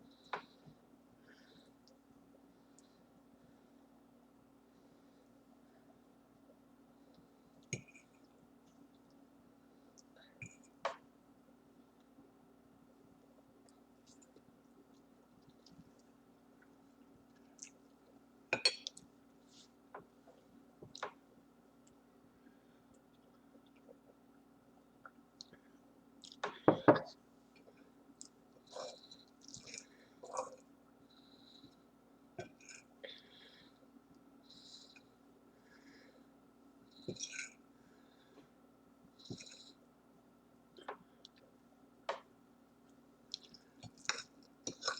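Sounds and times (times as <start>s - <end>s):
faint eating clicks: 24.8s - 26.7s, 27.6s - 31.8s, 43.2s - 44.9s.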